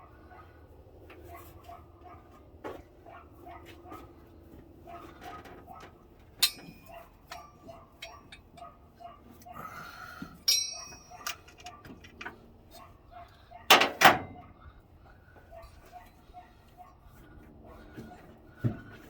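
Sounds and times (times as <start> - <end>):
metal tools clinking: 6.4 - 8.8, 10.4 - 12.4.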